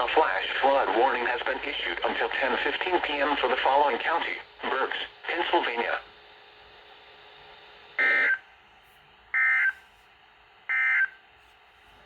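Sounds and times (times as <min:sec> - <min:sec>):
faint radio hiss: 0:00.0 - 0:06.9.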